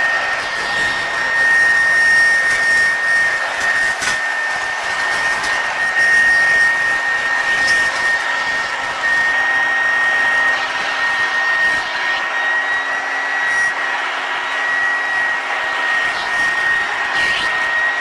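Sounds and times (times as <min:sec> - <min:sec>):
vacuum cleaner running: 0:00.0 - 0:18.0.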